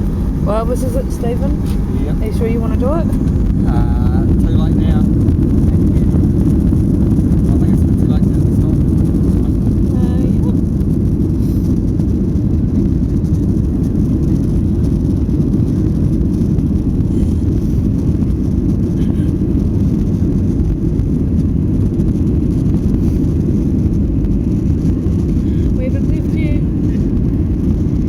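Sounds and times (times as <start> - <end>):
jet engines rumbling in cabin: 0.0 - 28.0.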